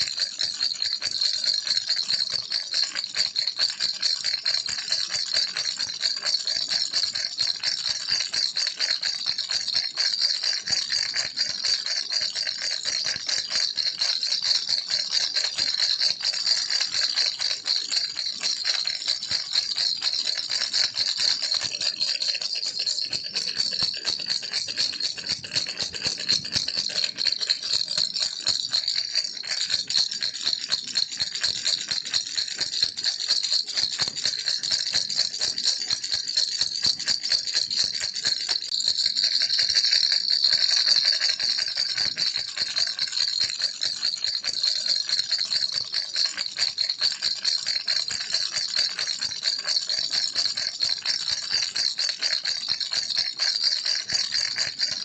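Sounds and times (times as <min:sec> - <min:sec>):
baby rattle shaken: 0:00.0 - 0:01.4, 0:10.6 - 0:47.8, 0:52.6 - 0:55.0.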